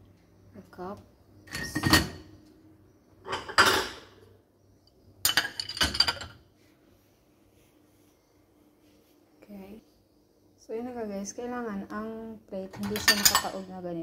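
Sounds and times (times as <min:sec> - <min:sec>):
dishes clinking into dishwasher rack: 0:01.5 - 0:02.3, 0:03.3 - 0:04.2, 0:05.3 - 0:06.4, 0:12.8 - 0:13.6.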